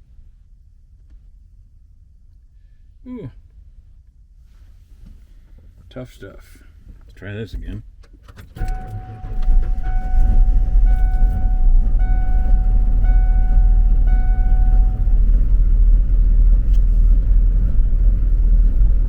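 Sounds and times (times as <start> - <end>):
dashboard warning chime beeping: 8.6 - 15.2
engine running rough: 8.6 - 19.0.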